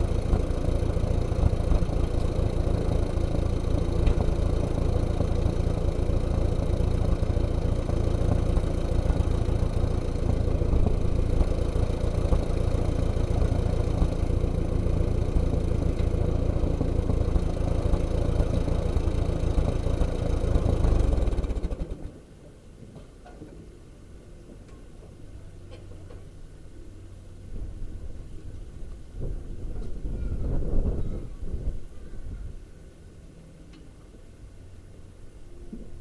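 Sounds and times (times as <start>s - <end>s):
tractor engine running: 0.0s - 22.2s.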